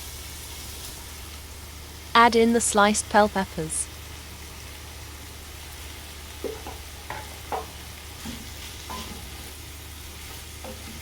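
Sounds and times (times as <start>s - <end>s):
food sizzling in oil: 0.0s - 11.0s
utensil scraping a pan: 6.5s - 9.6s.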